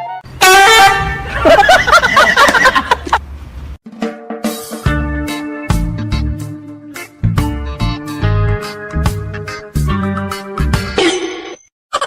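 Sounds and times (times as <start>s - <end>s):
music with drum hits: 3.8s - 11.0s.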